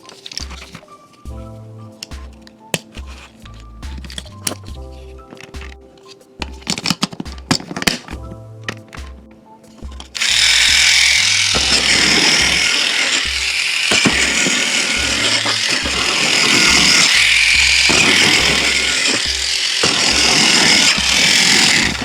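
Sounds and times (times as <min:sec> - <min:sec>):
background music with bass line: 0:01.3 - 0:06.7, 0:07.3 - 0:12.1
loud steady hissing: 0:10.2 - 0:22.0.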